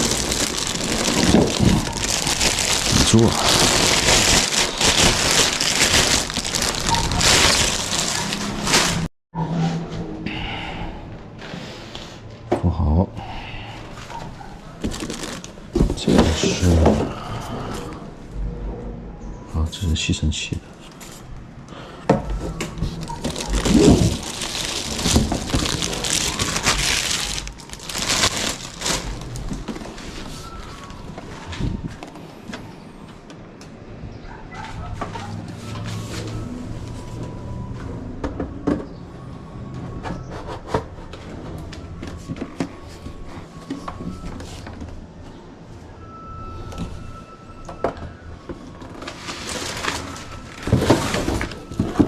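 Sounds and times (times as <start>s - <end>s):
plastic packaging crinkling: 0.0s - 9.1s, 14.8s - 16.2s, 22.8s - 31.7s, 48.9s - 52.0s.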